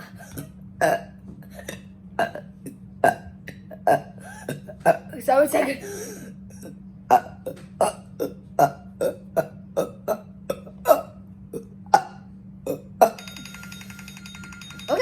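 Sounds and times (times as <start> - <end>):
person burping rapidly: 0.8 - 5.1, 6.6 - 13.2
timer alarm beeping: 13.0 - 15.0.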